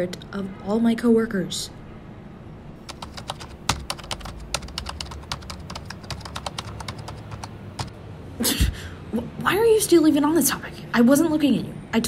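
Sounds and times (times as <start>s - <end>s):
steady low hum: 1.7s - 9.5s.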